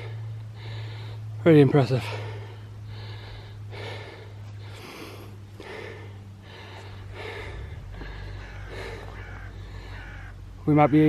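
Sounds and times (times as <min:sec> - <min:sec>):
person breathing heavily: 0:00.0 - 0:10.6
steady low hum: 0:00.0 - 0:11.0.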